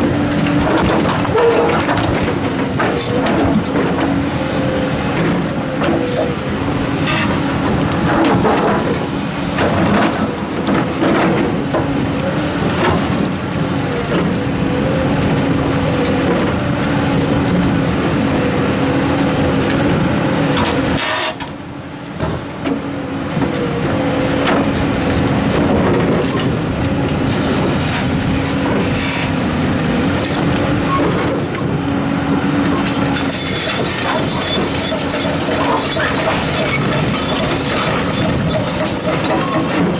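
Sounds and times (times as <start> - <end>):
excavator diesel engine: 0.0 - 39.9.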